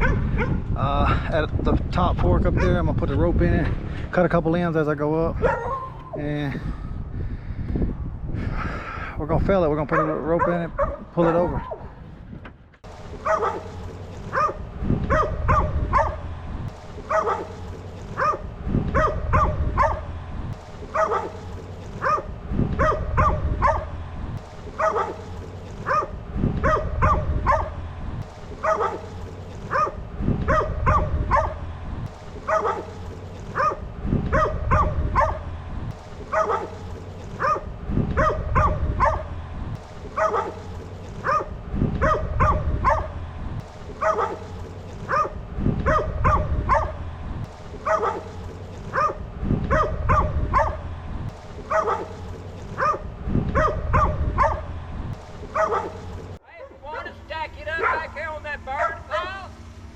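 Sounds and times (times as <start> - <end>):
dog barking: 0.0 - 0.6, 2.6 - 2.8, 5.4 - 6.2, 9.9 - 12.0, 13.2 - 16.2, 17.0 - 20.1, 20.9 - 24.0, 24.7 - 27.8, 28.6 - 31.6, 32.4 - 33.0, 33.6 - 35.5, 36.2 - 39.3, 40.1 - 43.2, 44.0 - 47.0, 47.8 - 50.8, 51.6 - 54.7, 55.5 - 56.8, 57.8 - 58.1, 58.8 - 59.1.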